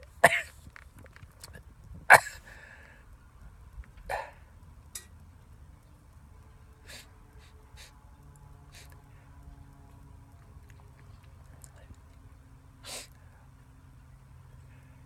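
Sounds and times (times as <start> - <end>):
man coughing: 0.2 - 0.6, 2.1 - 2.5
soft breaths: 0.4 - 5.1, 6.8 - 9.8, 11.0 - 13.9.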